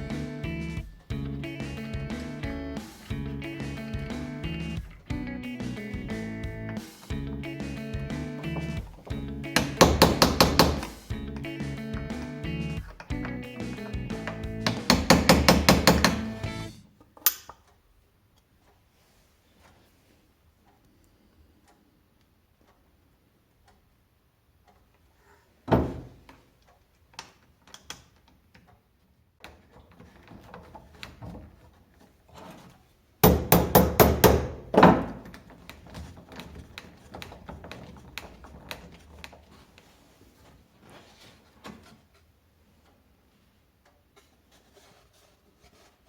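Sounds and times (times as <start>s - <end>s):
hard knocks: 8.0s - 12.3s, 13.1s - 16.5s, 25.7s - 26.2s, 33.2s - 39.0s
wooden knocks and clunks: 8.0s - 16.5s, 25.6s - 26.4s, 29.4s - 42.2s.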